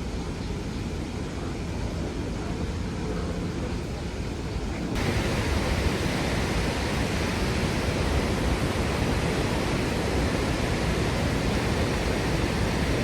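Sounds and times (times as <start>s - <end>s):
waterfall rushing: 5.0s - 13.0s.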